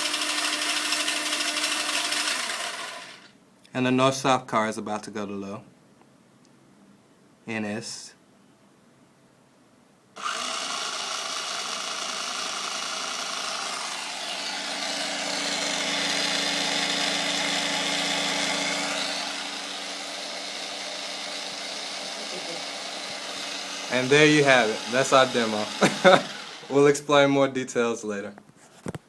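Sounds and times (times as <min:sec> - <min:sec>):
toy car electric motor whine: 0:00.0 - 0:03.3, 0:10.2 - 0:26.8.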